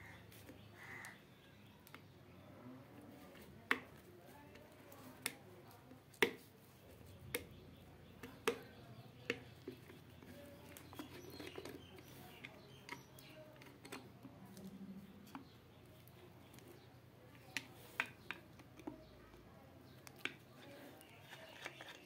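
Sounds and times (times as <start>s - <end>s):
light clicks and taps of tools: 8.2s - 22.0s.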